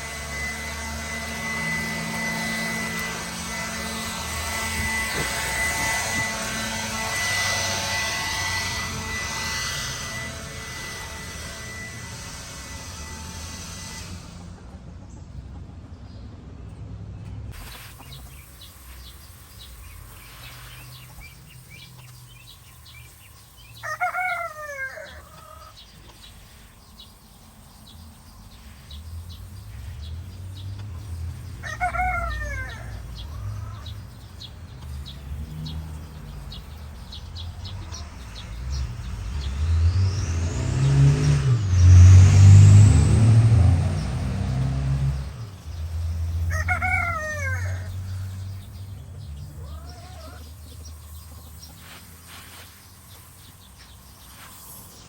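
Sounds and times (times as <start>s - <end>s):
rooster crowing: 23.7s - 25.8s, 31.6s - 34.0s, 46.4s - 48.2s, 49.6s - 50.6s.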